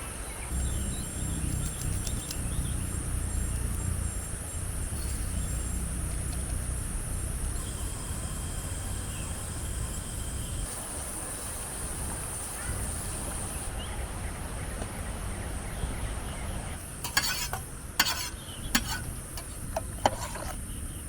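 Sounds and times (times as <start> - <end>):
insects droning: 0.0 - 21.0
low rumble: 0.5 - 10.6.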